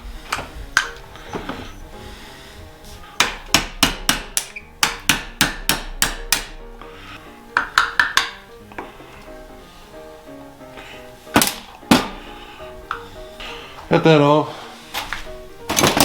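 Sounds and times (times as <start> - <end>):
hammer tapping on metal: 3.2 - 6.6, 7.6 - 8.9.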